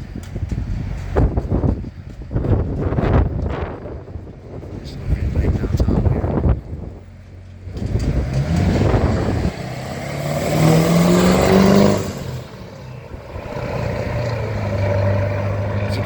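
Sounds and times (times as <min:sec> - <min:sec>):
car engine accelerating past: 0:07.6 - 0:16.0.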